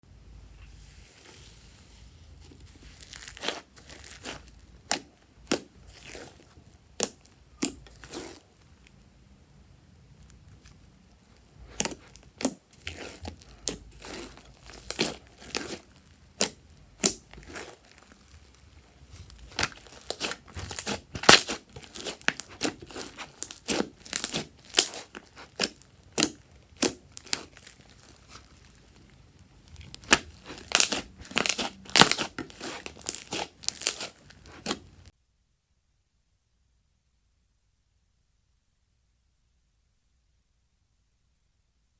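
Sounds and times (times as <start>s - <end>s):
slime crackling and popping: 2.9s - 9.0s, 10.2s - 35.1s.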